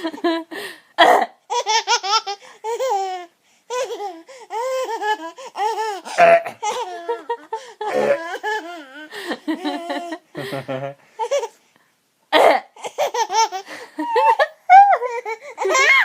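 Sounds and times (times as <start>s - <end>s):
baby laughing: 1.5s - 10.3s, 11.2s - 11.6s, 12.4s - 16.0s
fake burp: 6.2s - 6.6s, 7.9s - 8.3s.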